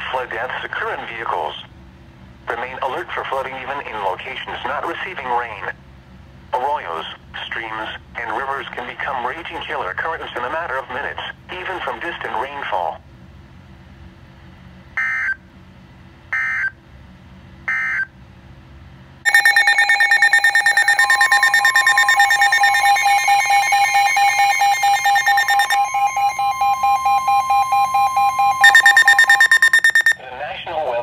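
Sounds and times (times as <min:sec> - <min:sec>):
rapidly pulsing alert tone: 0:19.3 - 0:30.2
screeching data tone bursts: 0:19.3 - 0:30.2.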